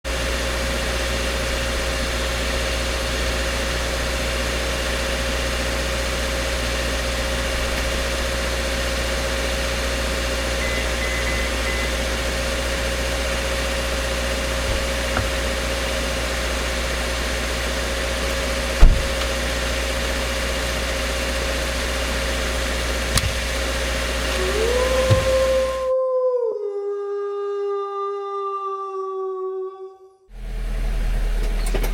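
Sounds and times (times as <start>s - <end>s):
engine-like hum: 0.0s - 26.0s, 30.3s - 31.9s.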